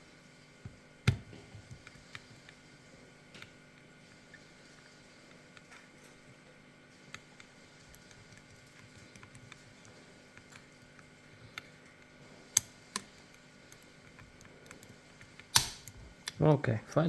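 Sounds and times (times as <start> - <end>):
lock pick ticks and clicks: 12.6 - 16.4
lock cylinder clacking open: 15.5 - 16.4.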